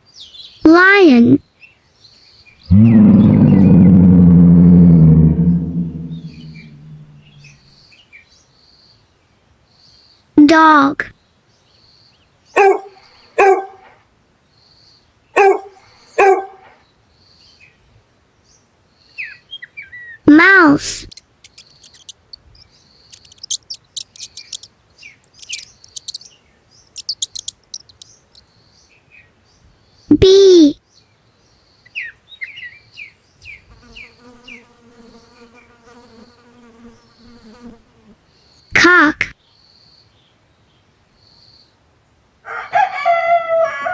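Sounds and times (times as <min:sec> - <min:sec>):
bee buzzing: 0:02.7 - 0:07.5, 0:20.8 - 0:26.3, 0:27.0 - 0:28.0
short high falling chirps: 0:02.7 - 0:07.5, 0:21.0 - 0:22.6, 0:23.2 - 0:26.3, 0:27.0 - 0:28.0
faint high squeaks: 0:05.0 - 0:07.5, 0:20.9 - 0:26.3, 0:26.9 - 0:28.0
dog barking: 0:12.6 - 0:13.9, 0:15.4 - 0:16.7.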